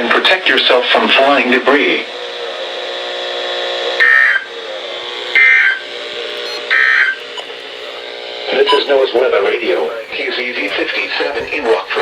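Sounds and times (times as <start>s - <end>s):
steady buzzing hum: 0.0s - 12.0s
harsh digital data bursts: 5.1s - 10.5s.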